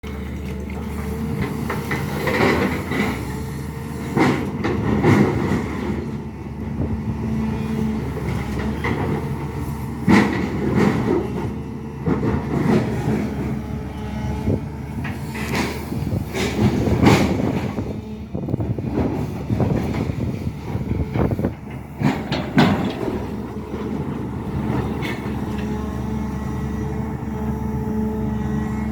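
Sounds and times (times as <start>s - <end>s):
excavator diesel engine running: 0.0s - 28.9s
metallic clanks from excavator bucket: 18.6s - 26.0s.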